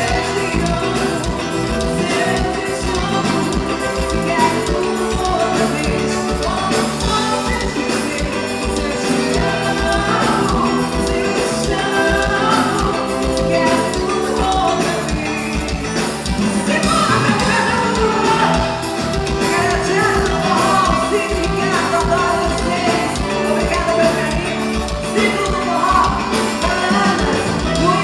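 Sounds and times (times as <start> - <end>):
band playing a song: 0.0 - 28.0
person singing: 0.0 - 28.0.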